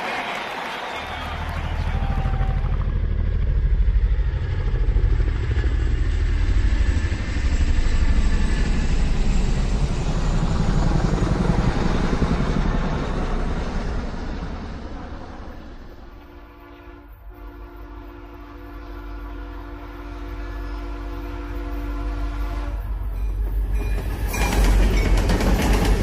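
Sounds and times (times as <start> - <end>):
vehicle engine rumbling: 1.2 - 16.3.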